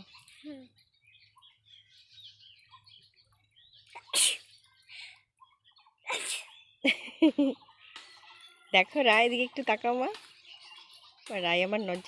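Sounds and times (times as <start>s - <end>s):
person sneezing: 4.0s - 4.5s.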